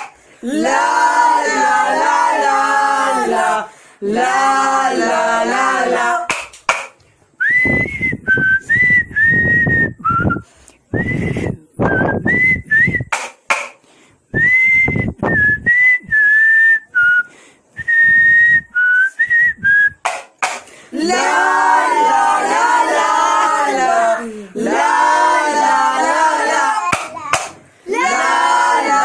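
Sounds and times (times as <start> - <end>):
voices singing together: 0.0 - 6.9, 20.9 - 29.0
person whistling a melody: 7.4 - 13.2, 14.3 - 20.0.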